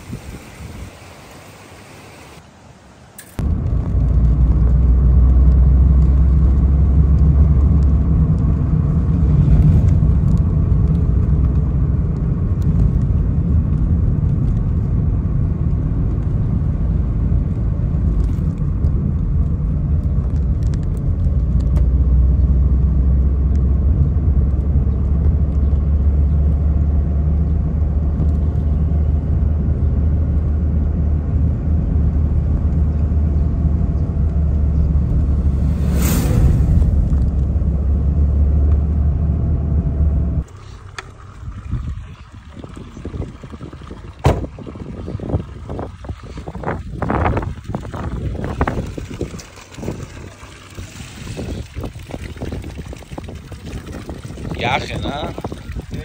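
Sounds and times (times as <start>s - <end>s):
low mechanical rumble: 3.4s - 56.0s.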